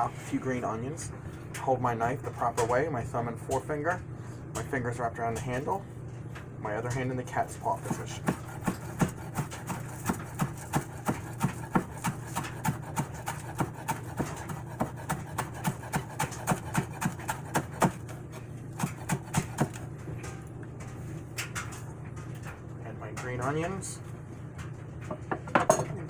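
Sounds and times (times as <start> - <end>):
knife chopping on cutting board: 7.8 - 18.2, 18.8 - 19.8.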